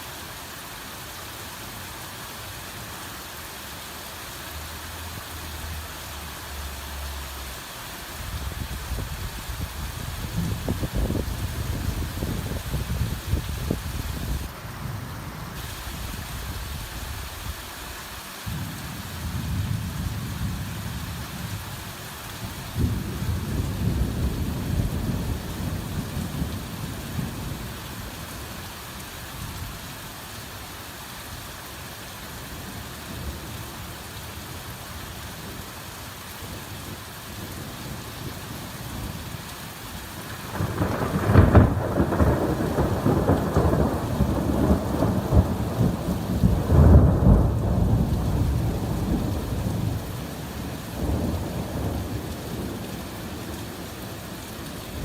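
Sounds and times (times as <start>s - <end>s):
heavy rain falling: 0.0s - 55.0s
thunder rumbling: 8.3s - 14.5s, 22.7s - 27.8s, 40.2s - 53.8s.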